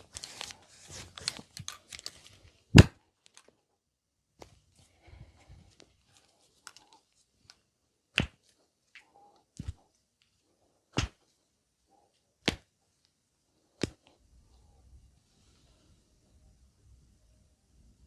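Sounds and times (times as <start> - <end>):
hands slapping on body: 8.2 - 9.0, 11.0 - 11.2, 12.4 - 12.7, 13.8 - 14.1.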